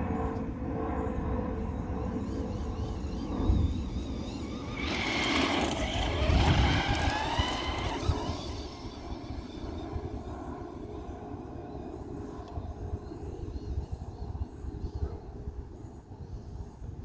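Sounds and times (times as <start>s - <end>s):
wind and ground rumble: 0.0s - 15.7s
electric motor whining: 1.5s - 13.8s.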